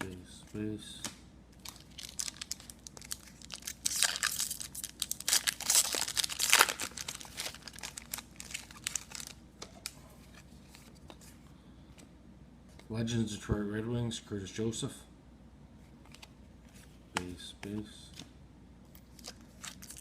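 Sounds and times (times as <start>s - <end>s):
plastic wrapper tearing and crinkling: 1.6s - 10.0s, 19.1s - 20.0s.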